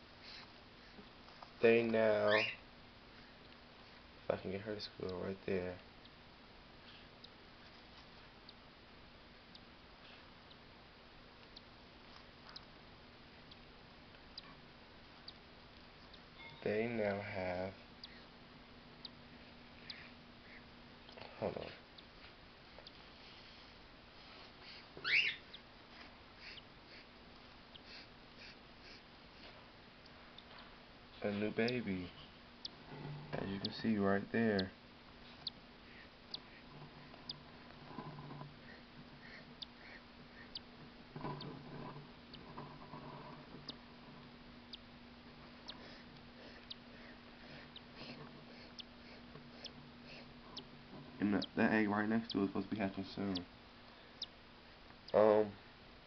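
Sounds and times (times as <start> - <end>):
steady low hum: 0.0 - 56.0
faint high chirps: 2.0 - 2.7, 16.0 - 18.4, 25.0 - 25.6
bird chick squealing: 2.2 - 2.6, 25.0 - 25.6, 26.4 - 27.1, 38.6 - 40.7
chick peeping: 34.6 - 37.9, 38.5 - 40.8, 42.3 - 53.5, 54.2 - 54.4.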